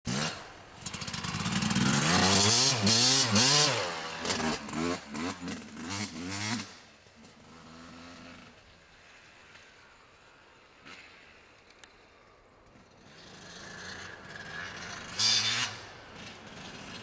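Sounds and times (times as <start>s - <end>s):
motocross bike revving: 0.1s - 8.7s, 13.0s - 17.0s.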